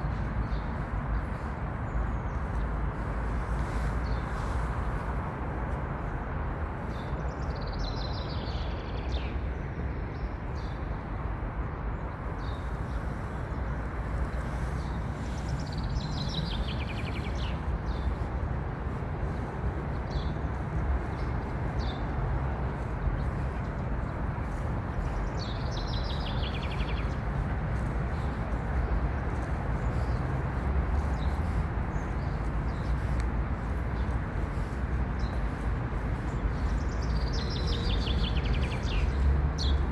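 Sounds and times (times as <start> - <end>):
songbird singing: 12.0 - 39.9.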